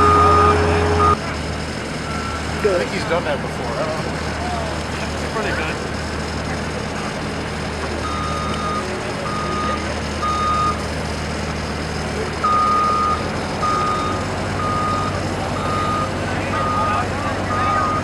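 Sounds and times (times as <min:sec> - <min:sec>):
backup alarm beeping: 0:00.0 - 0:01.2, 0:12.5 - 0:18.0
diesel engine hum: 0:00.0 - 0:18.0.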